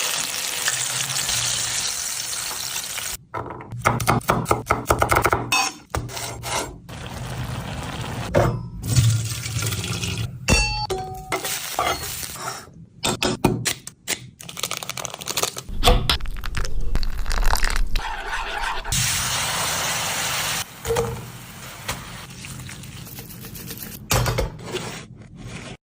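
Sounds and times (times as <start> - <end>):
steady cooking hiss: 19.0 - 22.4.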